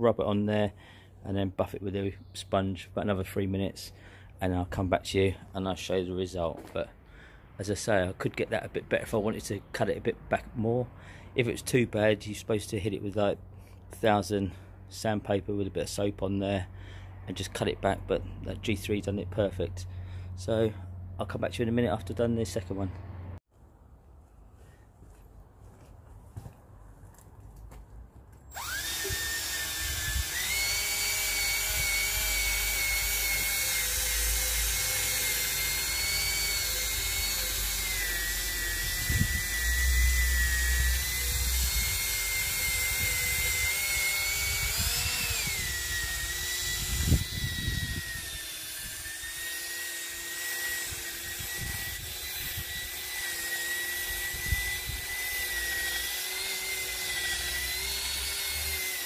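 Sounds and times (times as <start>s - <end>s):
cordless drill motor whine: 28.5s - 59.0s.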